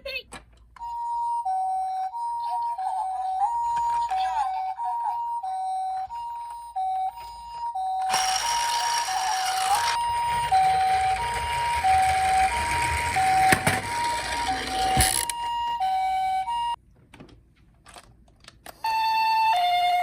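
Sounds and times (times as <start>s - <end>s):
toy two-tone siren: 0.8s - 16.8s, 18.8s - 20.0s
toy wheels rolling: 8.0s - 15.4s.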